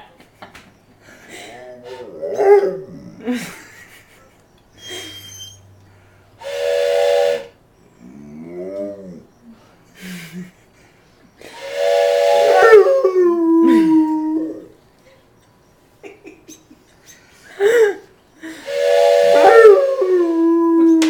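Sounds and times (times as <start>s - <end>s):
dog howling: 1.3s - 3.3s, 8.0s - 9.4s, 12.6s - 14.7s, 19.4s - 21.0s
train whistle: 6.4s - 8.9s, 11.4s - 14.7s, 18.4s - 21.0s.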